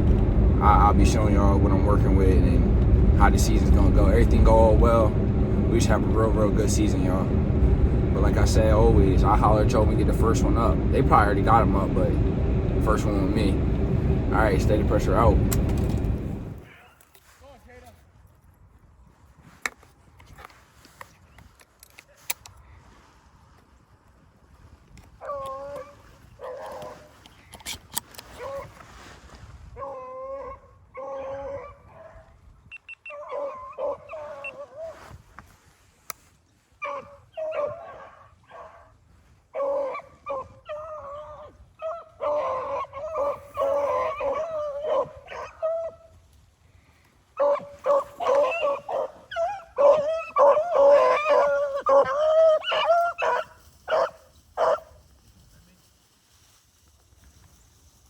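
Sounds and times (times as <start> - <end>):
hounds barking and baying: 29.8 - 32.3, 33.1 - 35.0, 36.8 - 46.1, 47.4 - 55.0.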